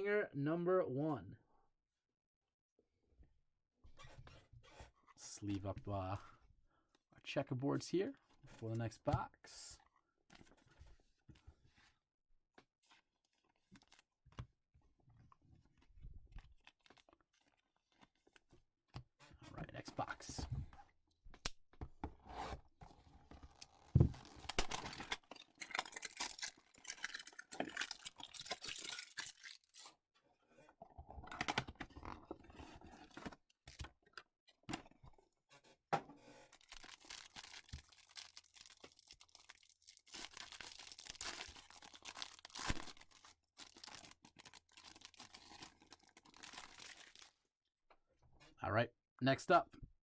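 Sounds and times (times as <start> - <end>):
tearing and rustling cardboard: 36.3 - 47.4.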